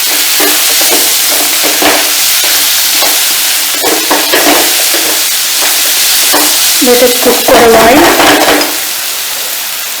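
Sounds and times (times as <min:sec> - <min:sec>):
utensil scraping a pan: 0:00.0 - 0:07.0
onion masala sizzling in a pan: 0:00.0 - 0:10.0.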